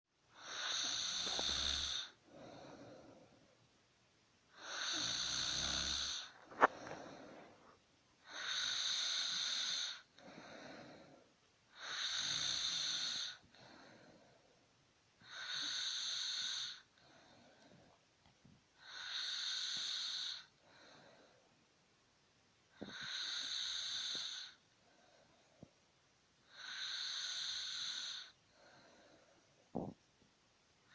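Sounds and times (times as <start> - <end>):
soft breaths: 0.3 - 3.8, 4.5 - 21.8, 22.7 - 30.1
wheezy whistling snores: 0.4 - 2.2, 4.6 - 6.7, 8.2 - 10.1, 11.7 - 13.4, 15.2 - 16.9, 18.8 - 20.6, 22.8 - 24.6, 26.5 - 28.4.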